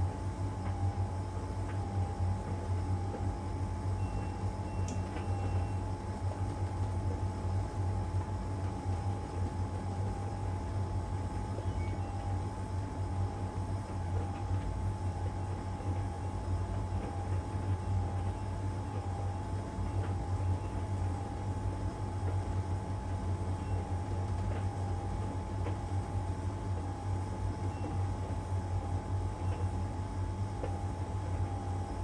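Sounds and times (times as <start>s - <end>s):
dryer humming with whine: 0.0s - 32.0s.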